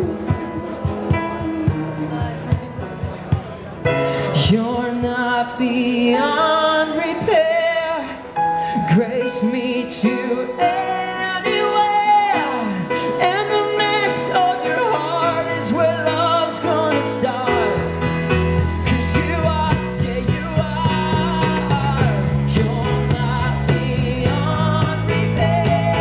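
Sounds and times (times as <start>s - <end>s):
steady drum beat: 0.0s - 3.8s, 17.8s - 26.0s
guitar: 0.0s - 26.0s
bass: 10.6s - 26.0s.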